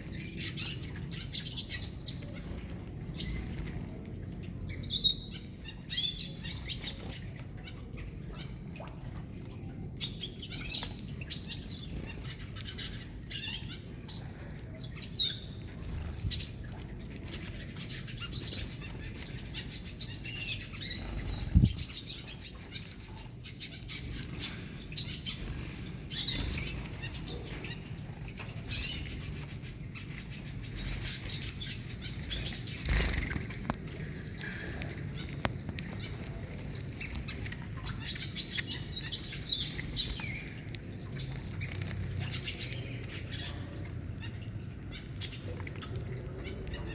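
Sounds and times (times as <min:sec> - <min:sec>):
finches chirping: 0:17.4 - 0:29.3.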